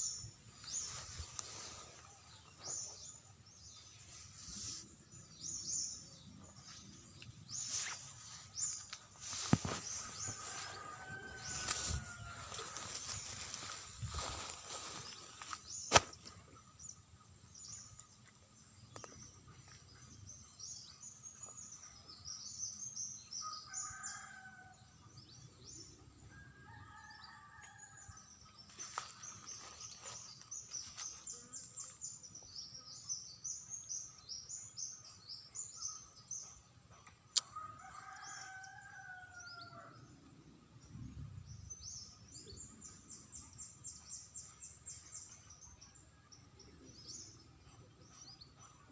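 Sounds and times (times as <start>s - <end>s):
rooster crowing: 10.3s - 12.9s.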